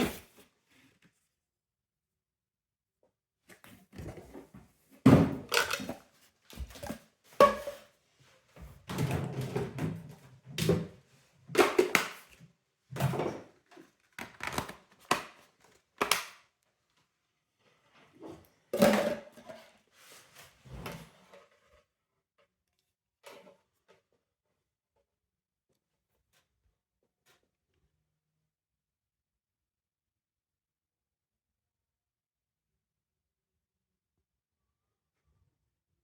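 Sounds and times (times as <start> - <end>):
plastic parts knocking and clicking: 5.2 - 6.0.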